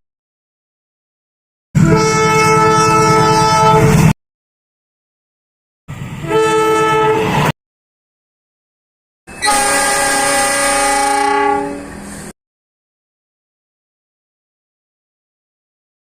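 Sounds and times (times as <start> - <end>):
locomotive horn blasts: 1.8 - 3.9, 6.2 - 7.3, 9.4 - 11.9.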